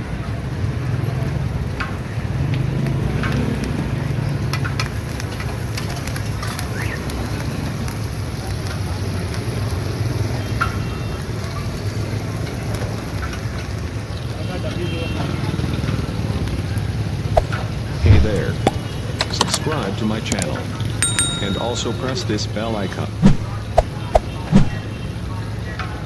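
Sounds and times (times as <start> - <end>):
traffic hum: 15.6 - 26.0
sharp clicks and clinks: 20.4 - 22.1.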